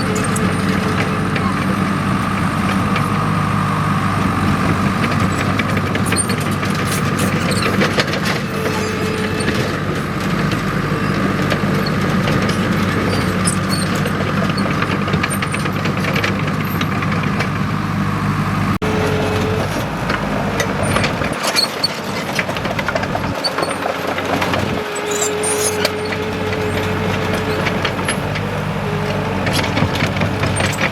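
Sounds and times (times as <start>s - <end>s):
bulldozer diesel engine running: 0.0s - 30.9s
clicks and clatter: 4.6s - 17.6s, 19.6s - 30.9s.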